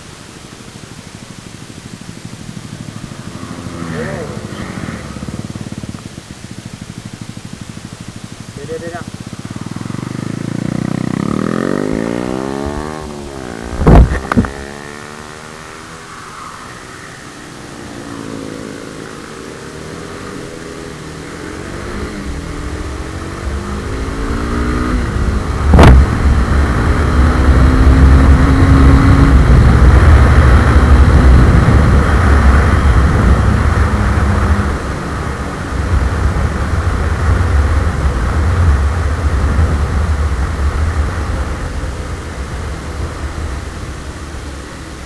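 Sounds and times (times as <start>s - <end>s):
motorcycle engine accelerating: 1.6s - 45.0s
wind rumble on microphone: 12.0s - 14.6s, 22.0s - 45.0s
sharp knock: 13.8s - 14.6s, 25.7s - 26.1s.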